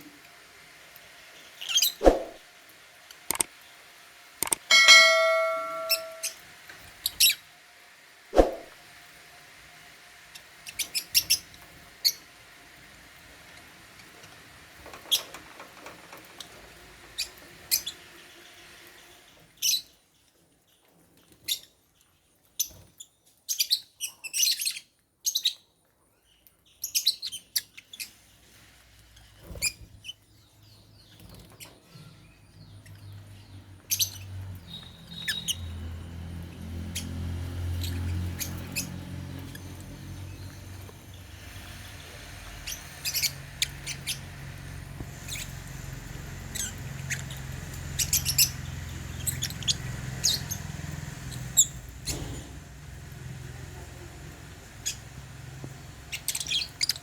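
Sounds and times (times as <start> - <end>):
lovebirds chirping: 4.7 - 6.4, 30.6 - 36.0.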